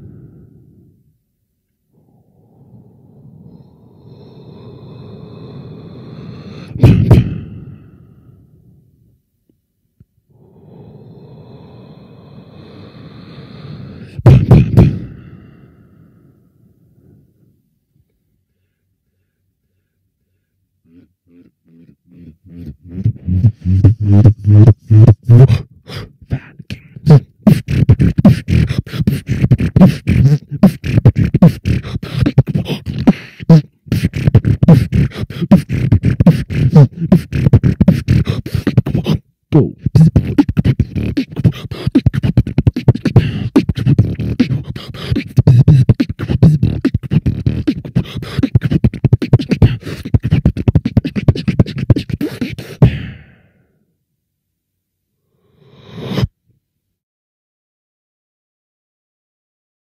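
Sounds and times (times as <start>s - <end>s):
person beatboxing: 5.4s - 7.8s, 12.6s - 15.5s, 20.9s - 53.4s, 55.6s - 56.3s.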